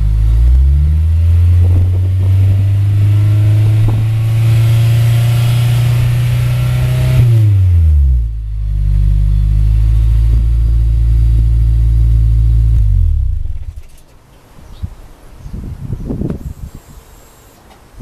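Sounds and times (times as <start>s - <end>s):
car engine at raised revs: 0.0s - 14.0s.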